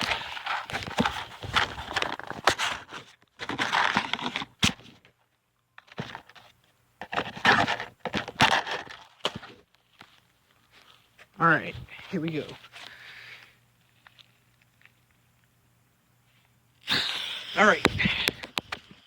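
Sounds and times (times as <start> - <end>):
hands rustling and crinkling: 0.0 - 5.1, 5.9 - 15.6.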